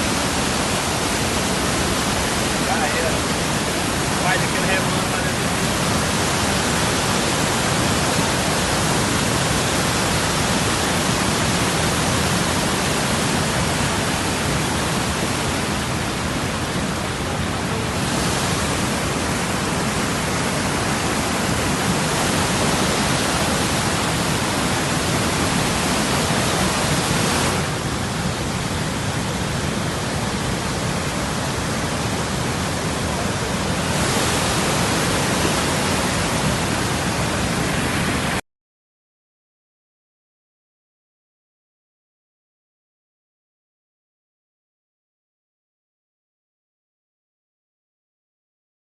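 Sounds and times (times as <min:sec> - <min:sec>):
waterfall rushing: 0:00.0 - 0:38.4.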